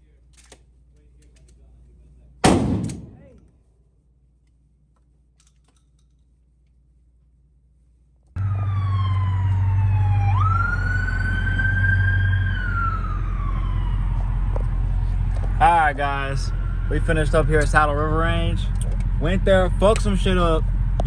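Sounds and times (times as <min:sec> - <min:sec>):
steady low rumble: 0:01.7 - 0:04.9, 0:11.7 - 0:21.0
siren wailing: 0:08.4 - 0:18.6.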